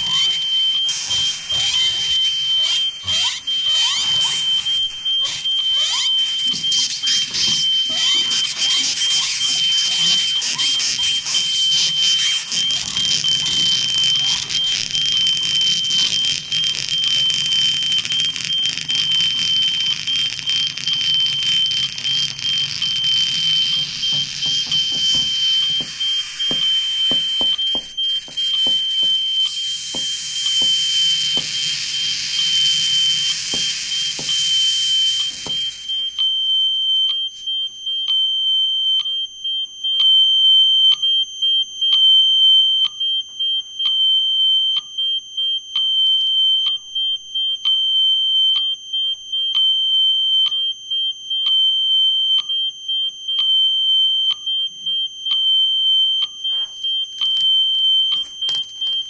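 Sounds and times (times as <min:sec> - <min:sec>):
high alarm-like tone: 0:00.0 - 0:37.6, 0:55.5 - 0:59.0.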